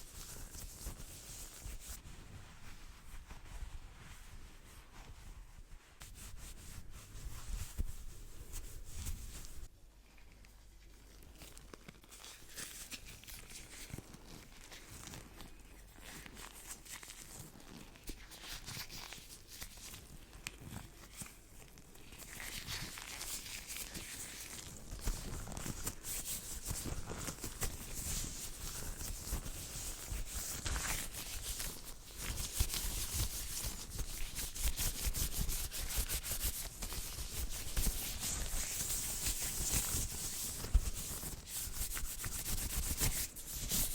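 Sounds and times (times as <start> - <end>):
hands rubbing together: 22.3 - 43.9.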